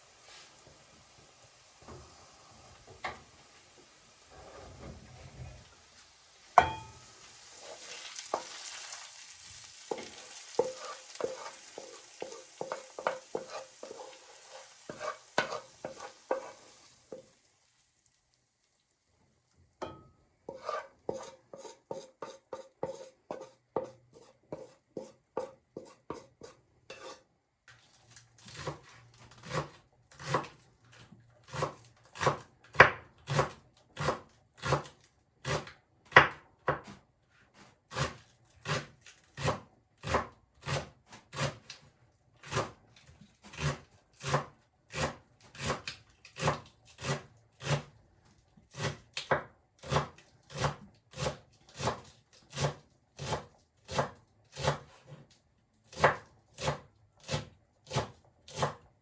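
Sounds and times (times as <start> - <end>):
food sizzling in a pan: 0.0 - 25.1
utensil knocking in a pan: 6.6 - 7.0.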